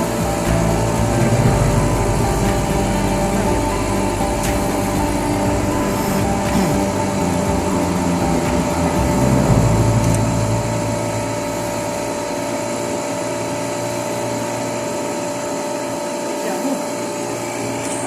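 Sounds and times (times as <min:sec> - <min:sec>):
deep rumble: 0:00.0 - 0:13.4
mechanical hum with tones: 0:00.0 - 0:18.0.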